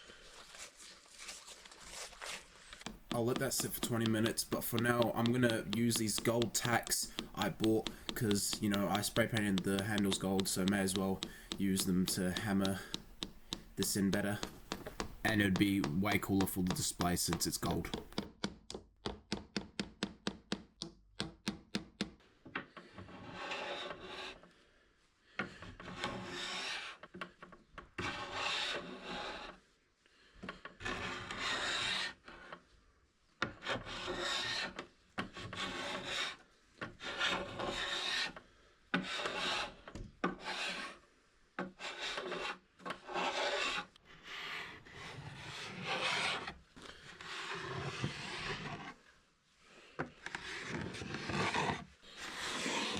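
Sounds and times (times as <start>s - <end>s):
rubbing on wooden surface: 1.2s - 18.2s, 35.4s - 36.4s, 41.8s - 49.0s, 50.4s - 52.9s
hammer tapping tacks into wood: 2.8s - 22.2s.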